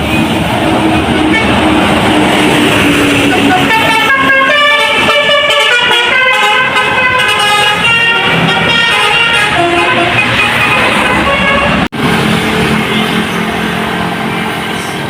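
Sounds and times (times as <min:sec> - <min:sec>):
road noise: 0:00.0 - 0:15.0
bus multi-tone air horn tune: 0:03.1 - 0:11.9.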